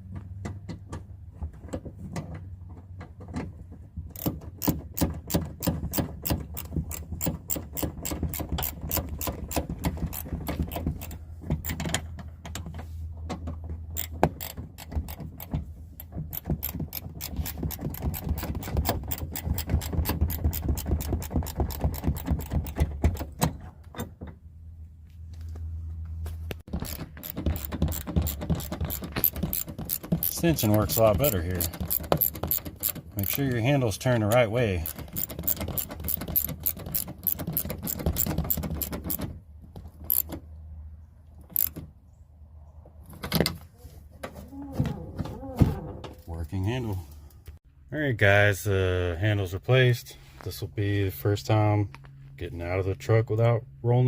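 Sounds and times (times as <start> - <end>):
hand ratchet clicking: 4.2 - 11.8, 14.0 - 22.8, 26.7 - 33.5, 34.3 - 39.2, 40.0 - 40.4, 41.5 - 41.8.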